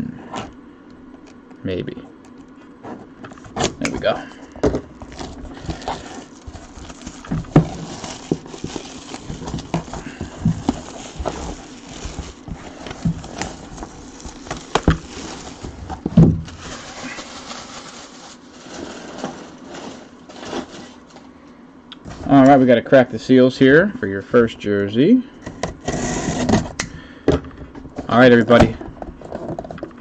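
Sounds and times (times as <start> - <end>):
plastic wrapping crinkling: 3.4 - 21.3.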